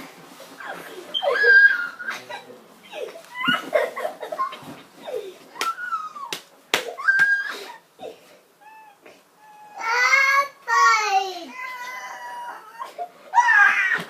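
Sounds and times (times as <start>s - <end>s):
children squealing: 0.6s - 2.5s, 11.5s - 14.0s
children giggling: 0.6s - 6.3s
sharp smacks: 5.6s - 7.4s.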